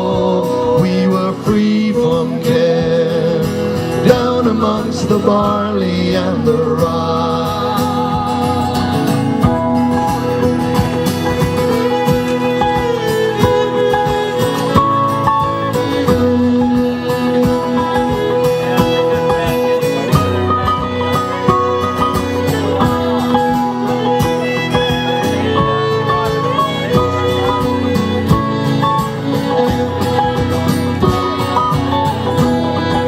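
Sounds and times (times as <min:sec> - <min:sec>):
fiddle: 0:00.0 - 0:33.0
strummed guitar: 0:00.0 - 0:33.0.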